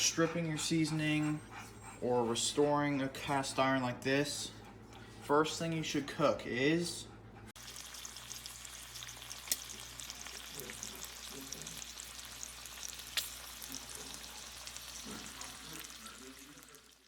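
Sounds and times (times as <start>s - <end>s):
bacon sizzling in a skillet: 7.6s - 17.0s.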